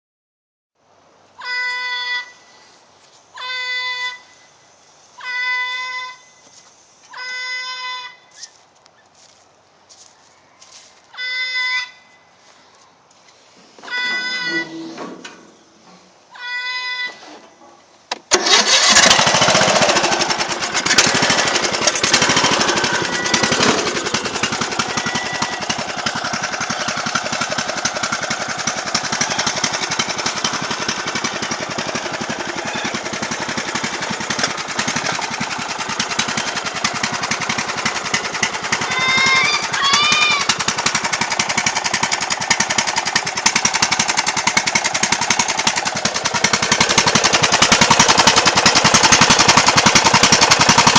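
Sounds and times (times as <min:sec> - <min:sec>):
lawnmower engine running: 0:18.0 - 0:50.9.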